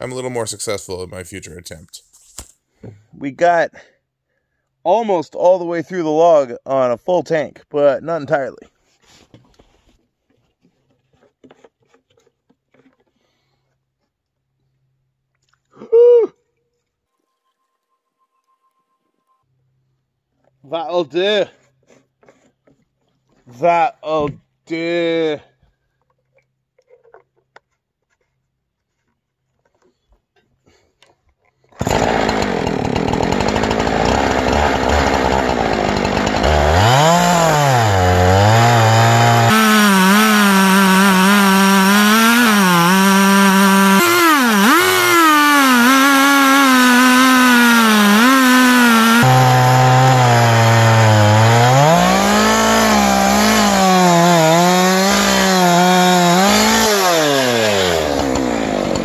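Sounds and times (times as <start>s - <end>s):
chainsaw ripping a log: 31.6s - 59.0s.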